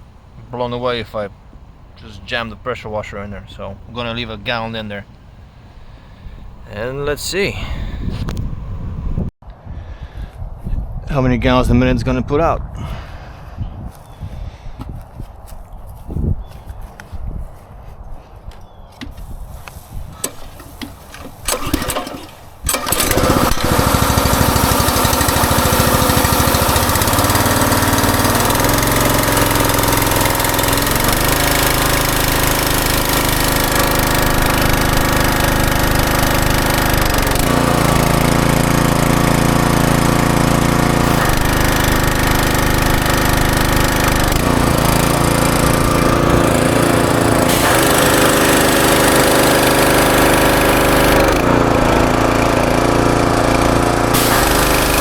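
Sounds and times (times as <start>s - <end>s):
pressure washer engine running: 20.1s - 55.0s.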